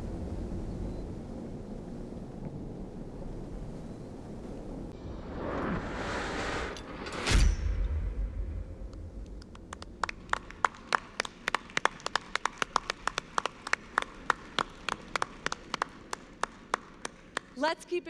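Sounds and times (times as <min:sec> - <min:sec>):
low rumble: 0:00.0 - 0:11.3
audience applause: 0:09.4 - 0:17.6.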